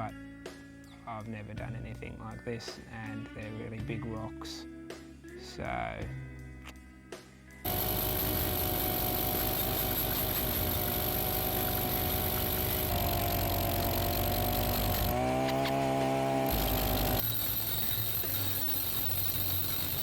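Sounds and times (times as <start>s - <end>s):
petrol drill drilling into stone: 7.7s - 20.0s.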